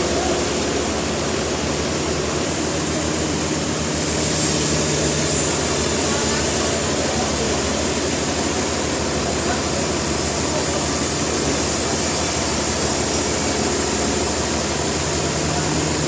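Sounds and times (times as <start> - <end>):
sawmill machinery din: 0.0 - 16.0
low engine hum: 12.8 - 16.0.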